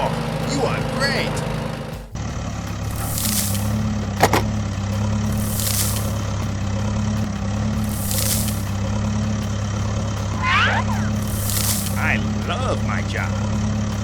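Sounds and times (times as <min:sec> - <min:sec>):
small tractor engine droning: 0:00.0 - 0:14.0
faint hiss: 0:07.8 - 0:08.8, 0:11.0 - 0:12.2.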